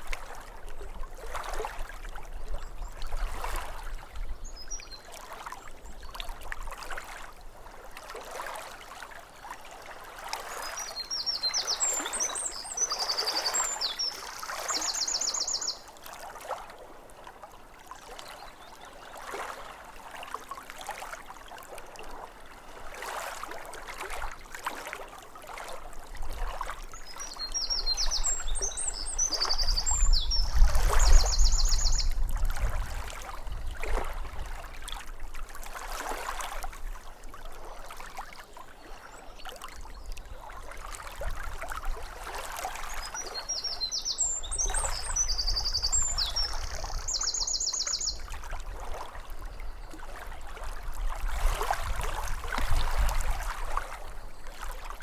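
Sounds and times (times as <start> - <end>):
lake water lapping at shore: 0.0 - 55.0
songbird singing with trill: 10.7 - 15.9, 27.0 - 32.2, 43.0 - 48.3.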